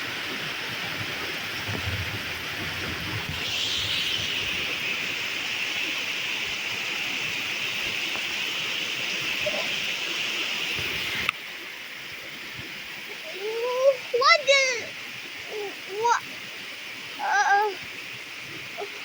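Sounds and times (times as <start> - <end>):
heavy rain pouring: 0.0 - 11.3, 13.2 - 16.2, 17.2 - 17.8.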